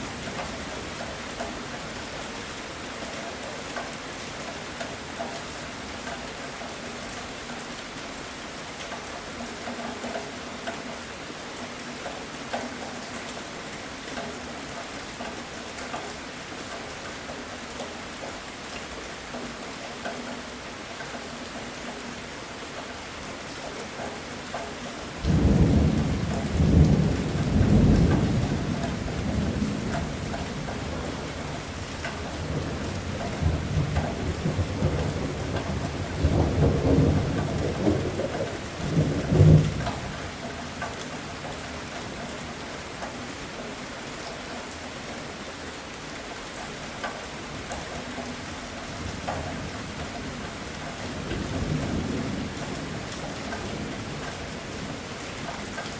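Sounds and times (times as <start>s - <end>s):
heavy rain falling: 0.0s - 55.9s
thunder rumble: 25.2s - 40.1s.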